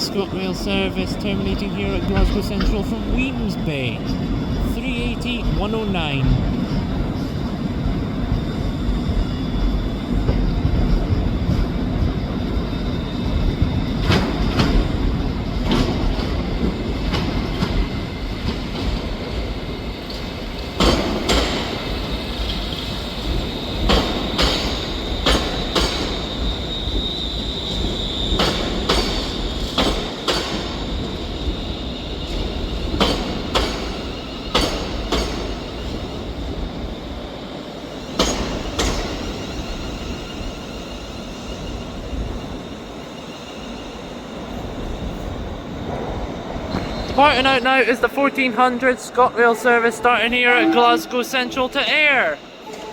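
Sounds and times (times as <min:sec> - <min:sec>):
train wheels clicking over rail joints: 0:01.6 - 0:03.2, 0:08.3 - 0:36.5, 0:38.0 - 0:42.4
high wheel squeal: 0:24.5 - 0:29.8.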